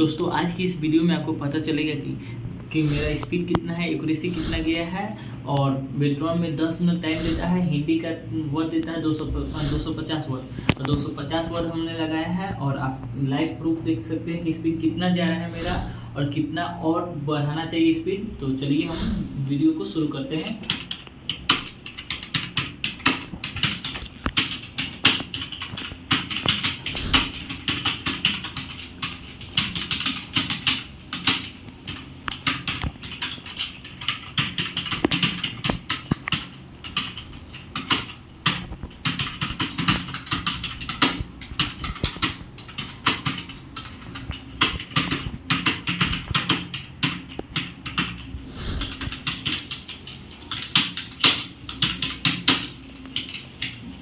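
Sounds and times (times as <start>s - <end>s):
fast keyboard typing: 0.0s - 2.1s, 2.7s - 5.0s, 20.4s - 54.0s.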